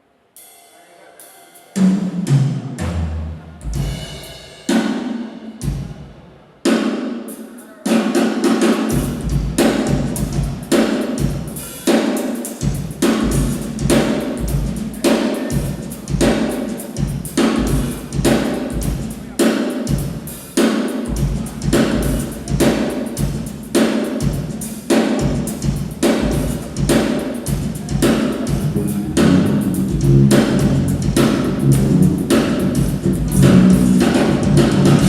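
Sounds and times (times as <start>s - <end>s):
drum kit playing: 0.4s - 35.0s
tom drum fill: 8.2s - 20.3s, 21.1s - 35.0s.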